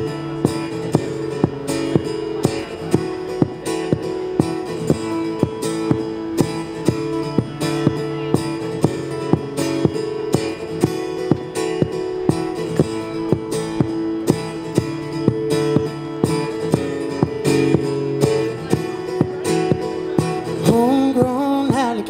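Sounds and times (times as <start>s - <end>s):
acoustic guitar strumming: 0.0s - 22.0s
man singing: 20.2s - 22.0s.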